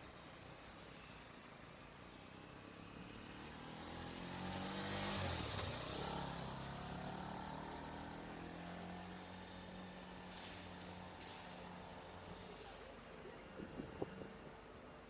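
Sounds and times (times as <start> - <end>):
vehicle passing by: 2.7 - 12.5.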